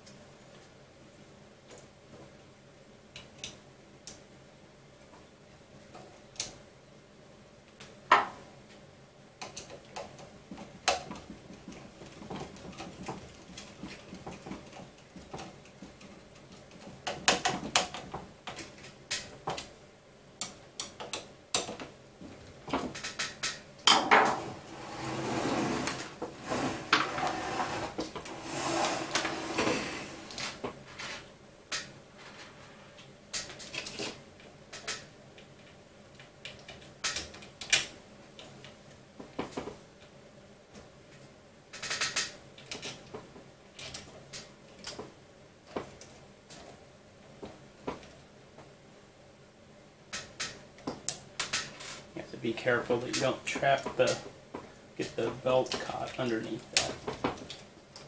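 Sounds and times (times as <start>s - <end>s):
small parts clicking and knocking: 20.4s - 21.9s, 22.7s - 24.0s, 33.3s - 38.5s, 41.7s - 43.2s, 50.1s - 52.1s.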